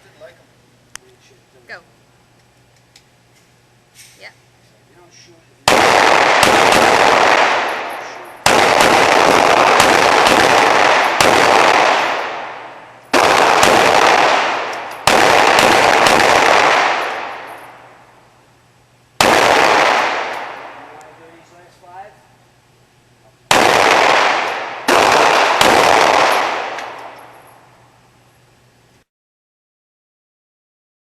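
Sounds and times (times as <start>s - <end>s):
pistol shots ringing: 5.6s - 18.1s, 19.2s - 21.0s, 23.5s - 27.7s.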